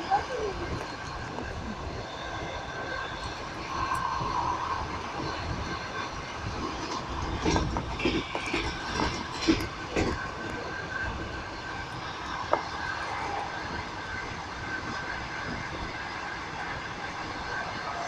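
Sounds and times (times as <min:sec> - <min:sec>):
train wheels rumbling on rails: 0:00.0 - 0:18.0
wheels clacking over rail joints: 0:03.9 - 0:15.3.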